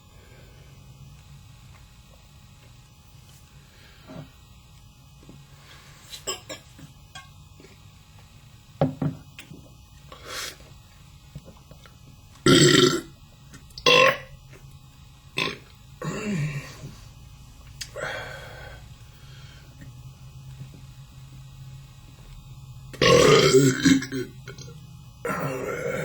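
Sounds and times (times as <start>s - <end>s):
man burping: 12.5s - 13.1s, 13.8s - 14.3s, 15.4s - 16.9s, 23.0s - 26.0s.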